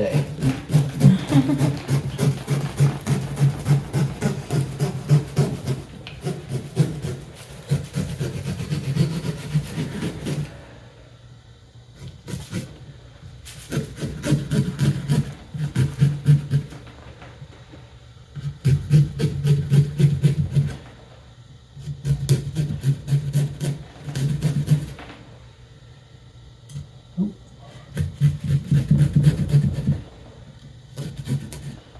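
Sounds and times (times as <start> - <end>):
knife sawing through pumpkin: 0.0 - 10.6, 12.0 - 12.8, 13.5 - 16.7, 18.4 - 20.8, 21.8 - 24.9, 27.9 - 30.0, 30.9 - 31.8.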